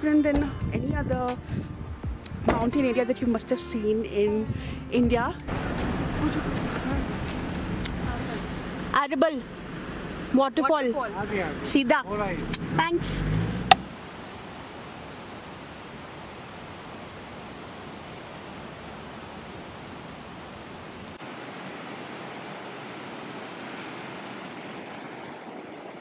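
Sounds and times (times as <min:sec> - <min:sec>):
waterfall rushing: 0:05.5 - 0:08.9.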